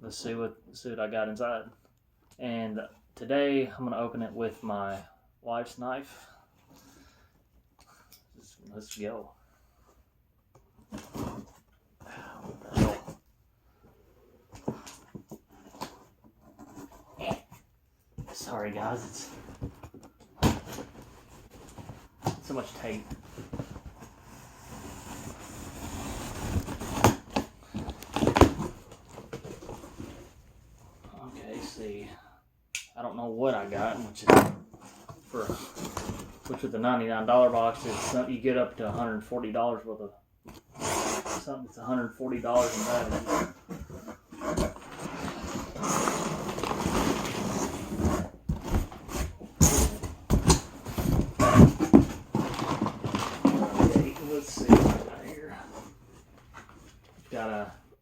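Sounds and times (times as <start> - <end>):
cardboard box rustling and scraping: 14.6 - 17.6, 18.2 - 30.4, 33.7 - 36.6, 42.4 - 57.0.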